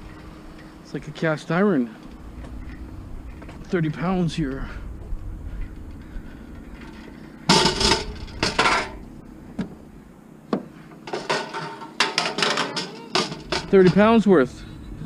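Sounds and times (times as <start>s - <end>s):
scrap metal clanking: 5.5s - 9.1s, 10.8s - 14.5s.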